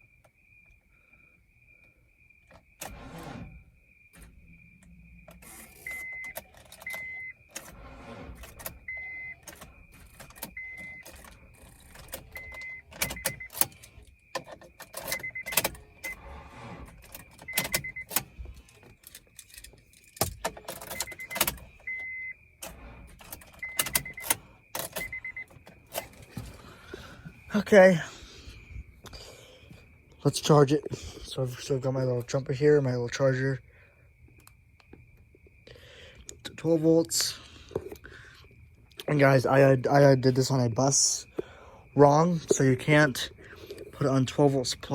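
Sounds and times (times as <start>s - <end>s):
car clicks and rattles: 2.4s - 27.5s.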